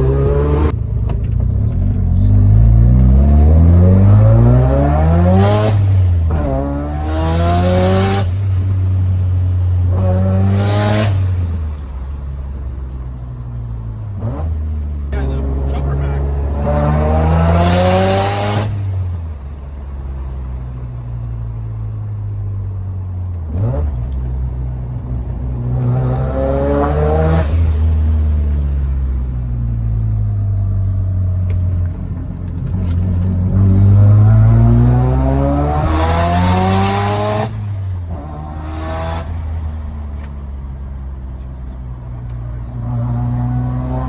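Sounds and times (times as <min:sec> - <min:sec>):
rotary engine accelerating: 0:00.0 - 0:12.2, 0:14.2 - 0:19.6, 0:25.3 - 0:30.7, 0:31.4 - 0:40.4, 0:42.6 - 0:44.0.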